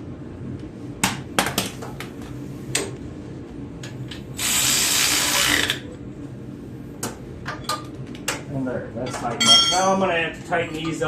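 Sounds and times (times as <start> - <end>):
ratchet wrench ratcheting: 4.4 - 5.8.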